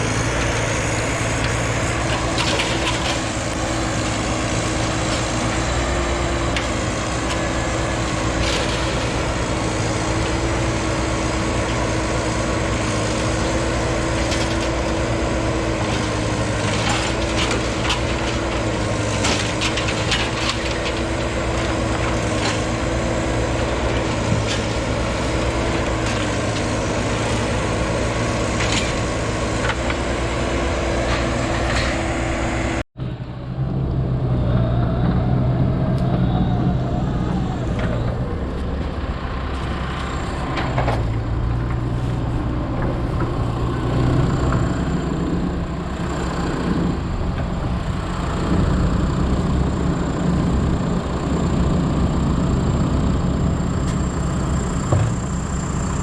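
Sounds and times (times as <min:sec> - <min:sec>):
heavy diesel engine running: 0:00.0 - 0:56.0.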